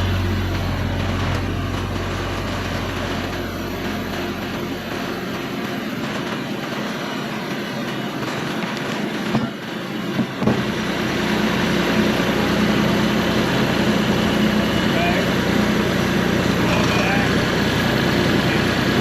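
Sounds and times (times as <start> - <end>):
band sawmill running: 0.0 - 19.0.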